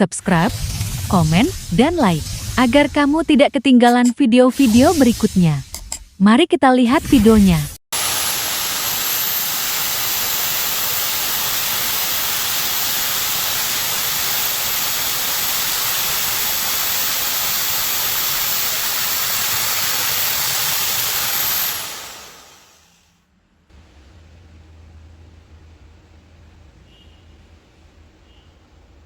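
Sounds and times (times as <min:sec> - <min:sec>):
machine spinning wood: 0:00.0 - 0:03.4, 0:08.0 - 0:22.8
high whine: 0:00.0 - 0:06.0.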